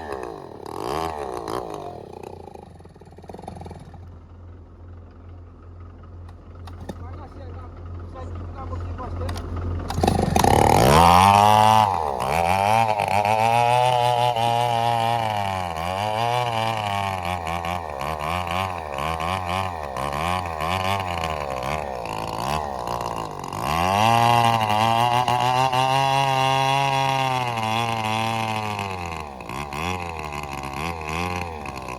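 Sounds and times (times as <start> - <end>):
bulldozer diesel engine revving: 0.0 - 4.4, 6.3 - 31.9.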